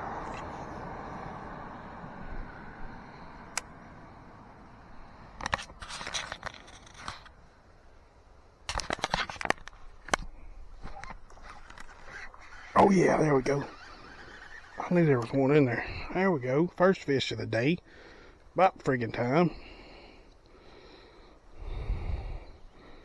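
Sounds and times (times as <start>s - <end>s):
fishing gear scraping: 10.8s - 16.2s
fishing reel clicking: 11.0s - 15.6s.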